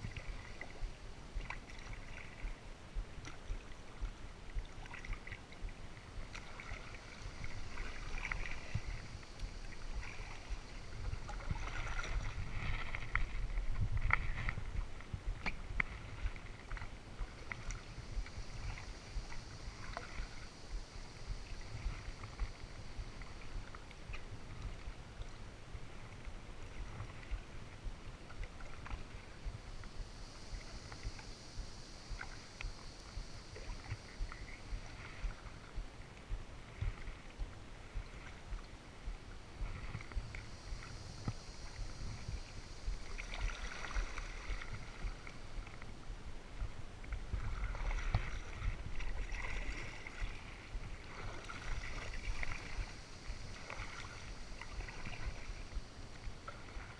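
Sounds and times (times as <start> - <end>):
paddle splashing in water: 0.0 - 56.9
soft high hiss: 0.0 - 56.9
low rumble: 7.0 - 49.3.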